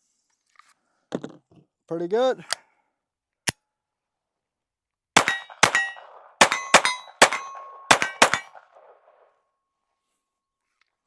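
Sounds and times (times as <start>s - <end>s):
pistol shots: 5.2s - 9.3s
metallic ringing: 5.3s - 8.5s.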